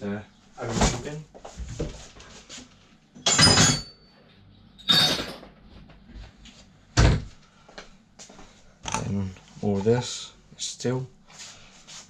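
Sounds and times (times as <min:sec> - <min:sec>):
metal parts clanking into bin: 0:03.2 - 0:03.9, 0:04.8 - 0:05.6.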